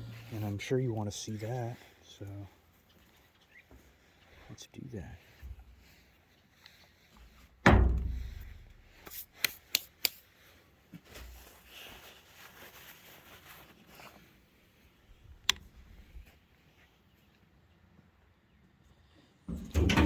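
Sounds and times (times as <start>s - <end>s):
heavy thump: 7.6s - 8.8s, 19.5s - 20.0s.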